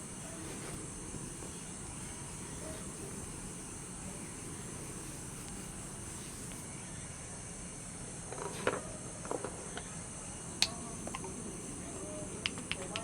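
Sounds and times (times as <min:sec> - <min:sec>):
high insect chirring: 0:00.0 - 0:07.1, 0:09.9 - 0:13.0
high hiss: 0:00.0 - 0:08.3, 0:09.7 - 0:13.0.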